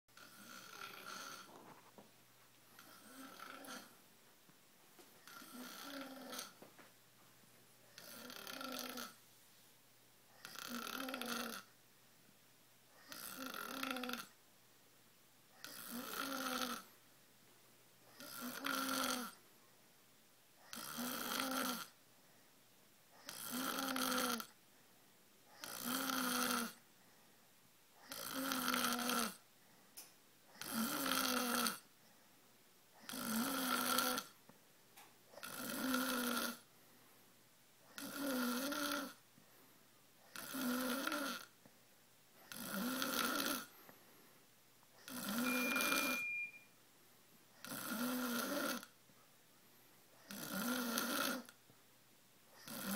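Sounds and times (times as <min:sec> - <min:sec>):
person snoring loudly: 0:00.2 - 0:01.7, 0:02.8 - 0:03.9, 0:05.2 - 0:06.6, 0:08.0 - 0:09.2, 0:10.4 - 0:11.7, 0:13.0 - 0:14.3, 0:15.6 - 0:16.9, 0:18.1 - 0:19.4, 0:20.6 - 0:21.9, 0:23.2 - 0:24.5, 0:25.5 - 0:26.8, 0:28.0 - 0:29.4, 0:30.5 - 0:31.8, 0:33.0 - 0:34.4, 0:35.4 - 0:36.6, 0:38.0 - 0:39.2, 0:40.3 - 0:41.5, 0:42.4 - 0:43.7, 0:45.0 - 0:46.6, 0:47.6 - 0:48.9, 0:50.2 - 0:51.5, 0:52.6 - 0:52.9.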